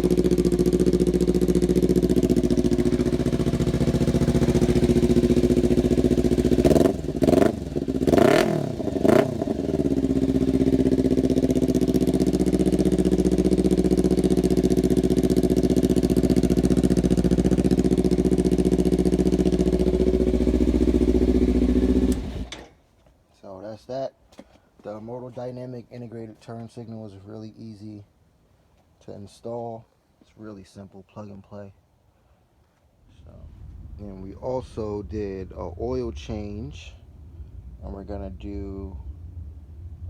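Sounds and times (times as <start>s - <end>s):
motorcycle engine idling: 0.0s - 22.5s
engine throttle blips: 0.0s - 22.6s, 33.2s - 40.0s.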